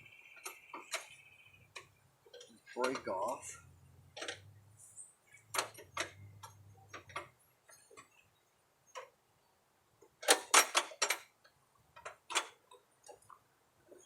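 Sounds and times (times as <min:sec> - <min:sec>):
metal clicks and clanks: 0:01.8 - 0:03.5, 0:04.1 - 0:04.5, 0:05.4 - 0:08.1, 0:10.2 - 0:11.3, 0:12.0 - 0:13.3.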